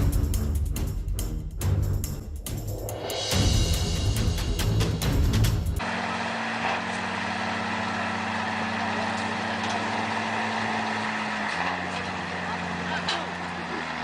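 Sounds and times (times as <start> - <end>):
loud background music: 0.0 - 5.8
heavy vehicle engine droning: 0.0 - 14.0.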